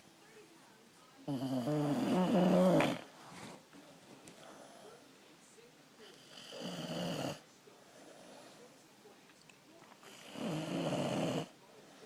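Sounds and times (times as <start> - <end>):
person snoring: 1.3 - 3.0, 10.1 - 11.5.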